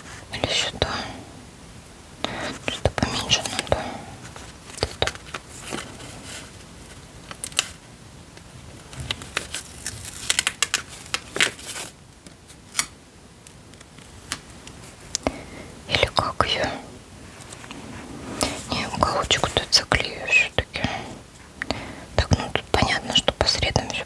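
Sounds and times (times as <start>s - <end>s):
paper clicks taps and crinkles: 2.6s - 15.4s.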